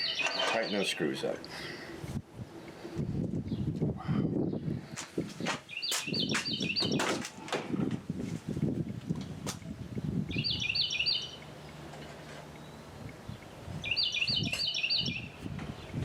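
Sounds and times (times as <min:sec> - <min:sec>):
songbird singing rising notes: 0:02.4 - 0:07.2, 0:10.1 - 0:16.0.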